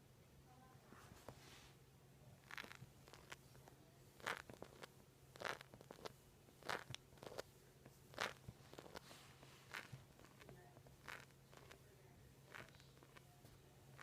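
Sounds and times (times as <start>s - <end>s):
knee joint cracking: 2.4s - 3.4s, 4.2s - 7.4s, 8.1s - 9.0s, 9.7s - 11.8s, 12.5s - 13.2s.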